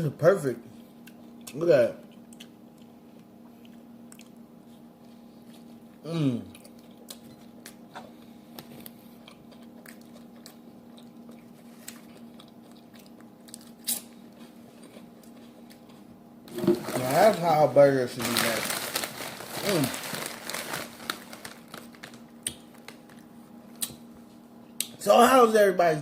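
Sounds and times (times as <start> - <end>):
steady low hum: 0.0 - 26.0
person chewing food: 0.9 - 16.2
person humming mmm: 6.0 - 6.6.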